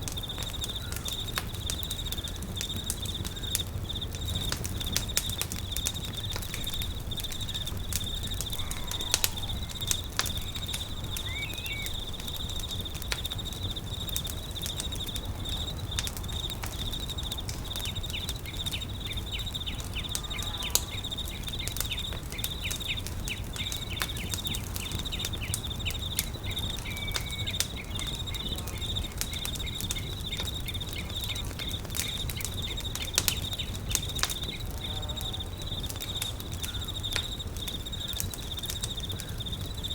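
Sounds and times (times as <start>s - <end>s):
campfire crackling and popping: 0.0s - 39.9s
insects chirring: 0.0s - 39.9s.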